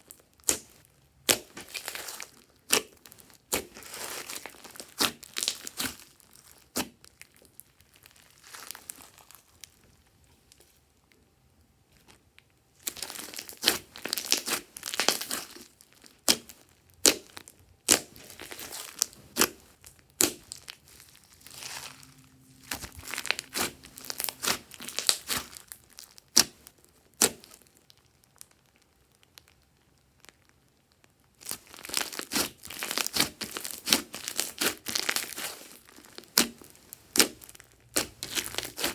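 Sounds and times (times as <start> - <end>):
slime crackling and popping: 0.0 - 10.8, 12.0 - 38.9.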